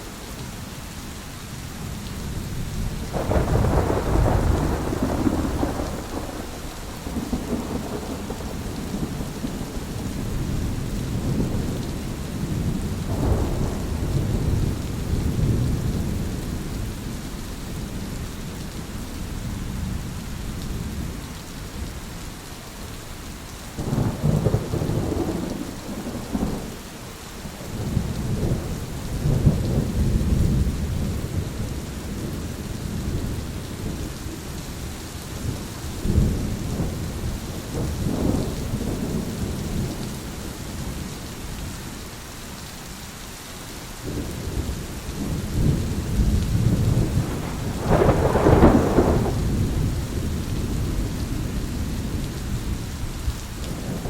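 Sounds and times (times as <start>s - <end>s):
heavy rain: 0.0s - 54.0s
rolling thunder: 2.6s - 18.2s, 23.8s - 26.8s, 27.4s - 41.1s, 44.0s - 54.0s.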